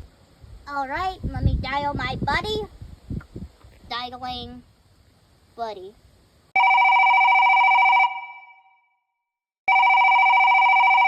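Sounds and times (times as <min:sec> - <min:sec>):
telephone ringing: 0:06.6 - 0:08.8, 0:09.7 - 0:11.0.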